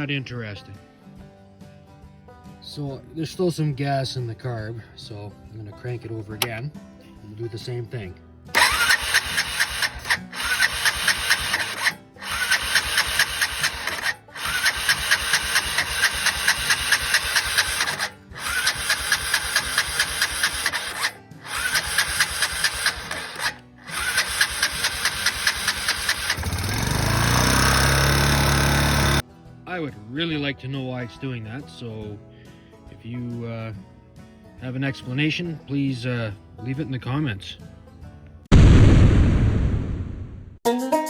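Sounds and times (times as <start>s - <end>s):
electric starter cranking engine: 6.4s - 6.6s, 8.6s - 29.2s
engine humming: 8.6s - 29.2s.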